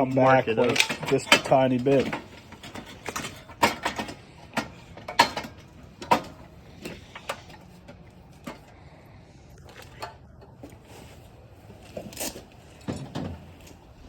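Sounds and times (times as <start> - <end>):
metal parts knocking and clicking: 0.0 - 7.6.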